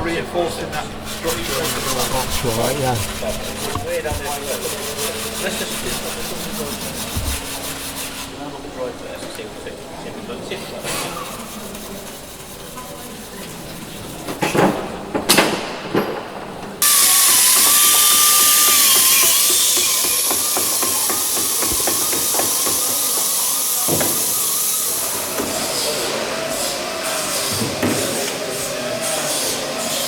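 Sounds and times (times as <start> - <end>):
machinery hissing with whine: 16.8 - 30.0.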